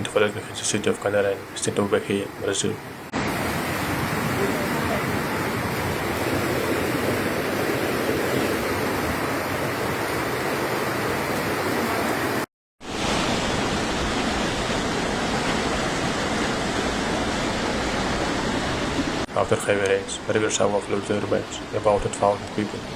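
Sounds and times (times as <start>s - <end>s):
floodwater rushing: 0.1s - 22.9s.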